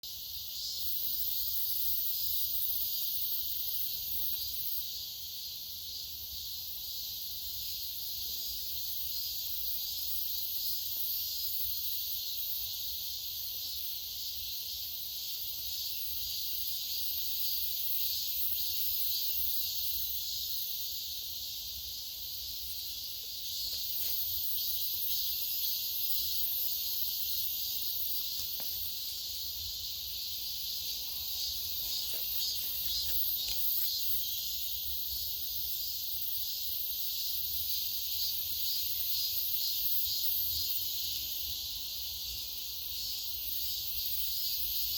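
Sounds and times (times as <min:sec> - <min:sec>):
insects buzzing: 0:00.0 - 0:44.9.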